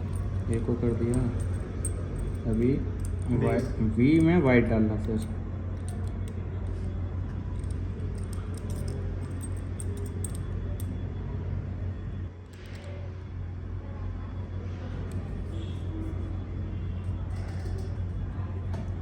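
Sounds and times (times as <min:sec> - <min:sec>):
metallic clicks and rattles: 0:00.0 - 0:04.4, 0:05.0 - 0:06.4, 0:07.5 - 0:10.9
steady low hum: 0:00.0 - 0:19.0.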